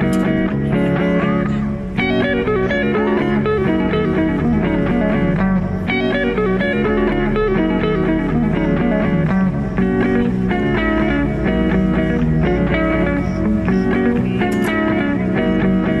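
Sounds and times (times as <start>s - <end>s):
guitar background music: 0.0s - 16.0s.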